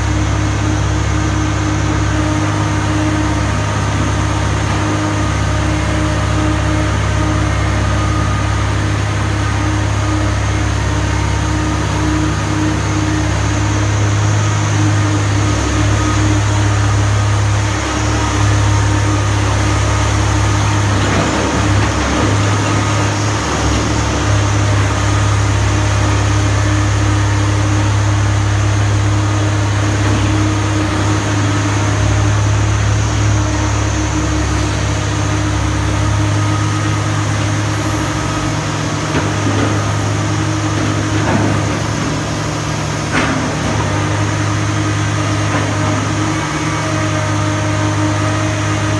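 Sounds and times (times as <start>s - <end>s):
excavator diesel engine running: 0.0s - 48.9s.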